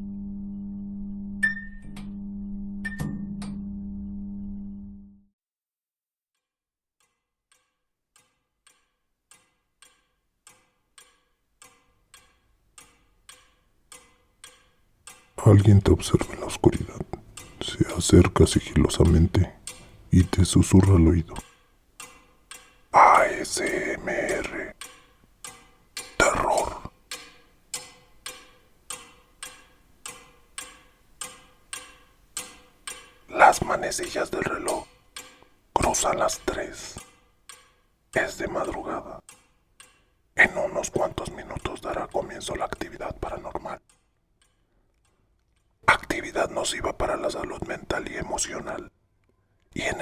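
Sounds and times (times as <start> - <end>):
clock ticking faintly: 7.0 - 50.0.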